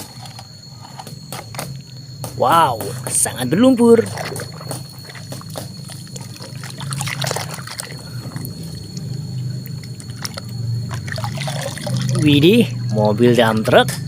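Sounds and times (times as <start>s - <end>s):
low steady hum: 0.0s - 14.0s
water pouring and trickling: 3.2s - 13.2s.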